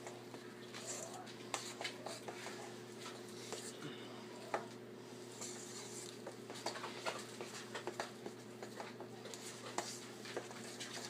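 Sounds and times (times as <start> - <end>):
steady low hum: 0.0 - 11.0
spoon stirring dough in bowl: 0.7 - 3.7.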